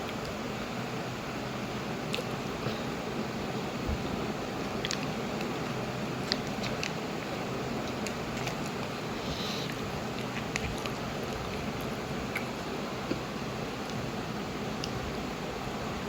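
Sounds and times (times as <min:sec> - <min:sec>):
steady background hiss: 0:00.0 - 0:16.0
person chewing food: 0:04.6 - 0:14.0.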